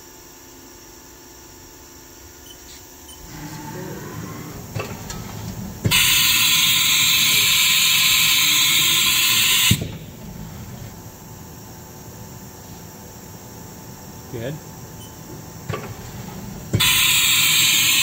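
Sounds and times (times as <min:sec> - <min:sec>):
compressed air hissing: 0:03.2 - 0:11.4, 0:14.4 - 0:18.0.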